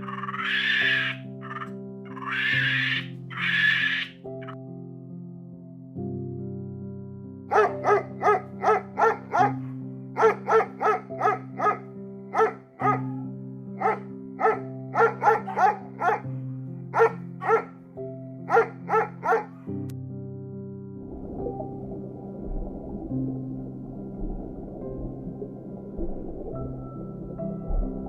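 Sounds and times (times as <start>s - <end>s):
dog yapping: 0.0s - 4.6s, 13.8s - 16.2s, 17.0s - 17.7s
background music: 0.0s - 28.0s.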